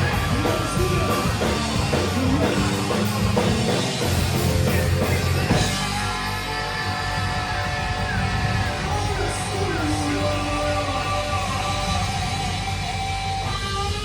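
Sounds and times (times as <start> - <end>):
bass guitar: 0.0 - 14.0
drum kit: 0.0 - 14.0
electric guitar: 0.0 - 14.0.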